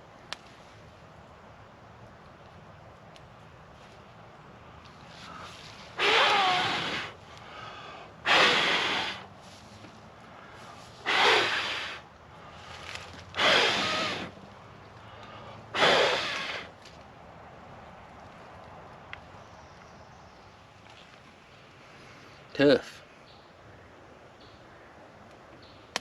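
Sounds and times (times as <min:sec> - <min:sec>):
person blowing on a campfire: 0:05.3 - 0:09.3, 0:11.0 - 0:12.0, 0:13.4 - 0:14.4, 0:15.7 - 0:16.8
person breathing in: 0:07.4 - 0:08.5.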